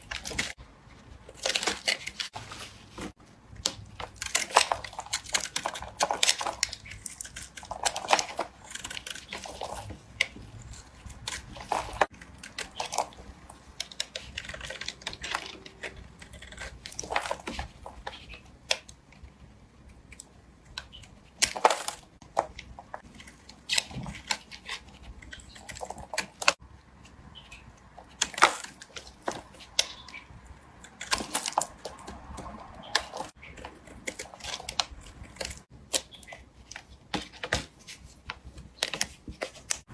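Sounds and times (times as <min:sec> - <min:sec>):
crumbly scraping: 0:00.0 - 0:18.4
knife cutting soap: 0:01.2 - 0:39.9.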